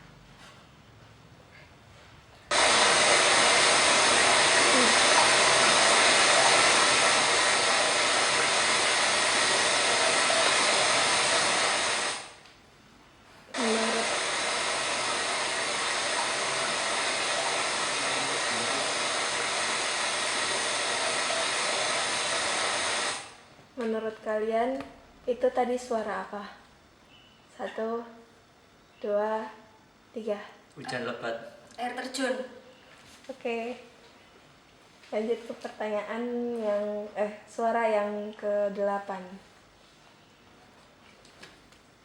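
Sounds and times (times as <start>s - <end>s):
rushing water hiss: 2.5s - 12.4s, 13.5s - 23.4s.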